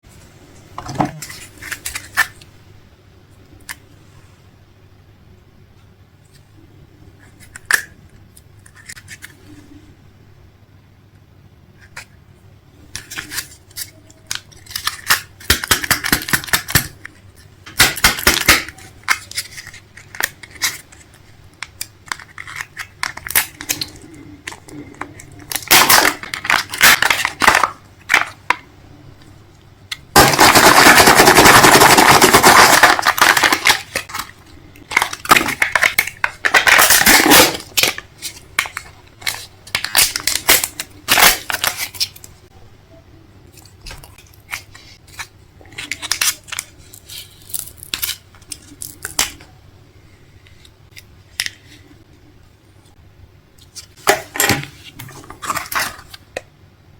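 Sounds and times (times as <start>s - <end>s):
hard objects clicking and clattering: 30.2s - 38.0s.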